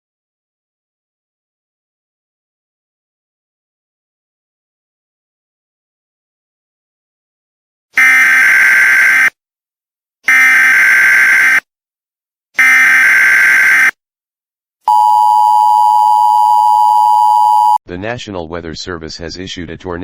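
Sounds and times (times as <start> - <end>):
two-tone attention signal: 14.9 - 17.8.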